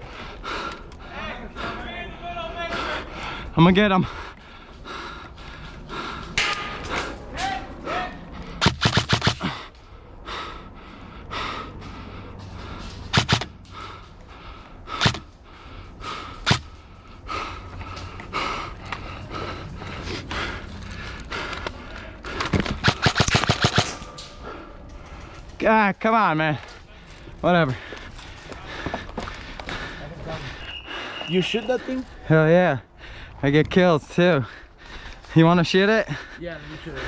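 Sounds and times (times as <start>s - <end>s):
airsoft gunshots: 8.6s - 9.4s, 13.1s - 13.5s, 22.8s - 24.1s.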